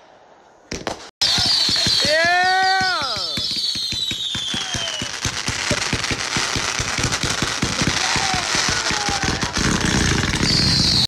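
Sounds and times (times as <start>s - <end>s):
firecrackers popping: 0.7s - 11.0s.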